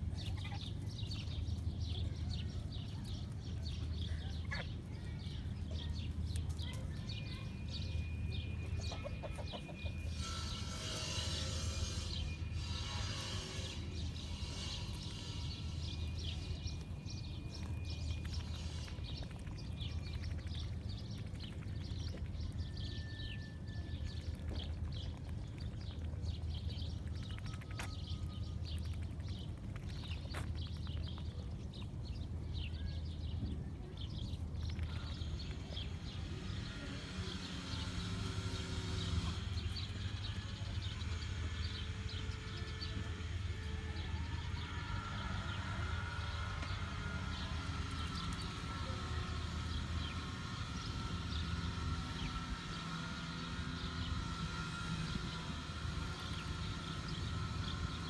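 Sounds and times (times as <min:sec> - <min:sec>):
steady low hum: 0:00.0 - 0:58.0
chicks peeping: 0:00.1 - 0:31.9.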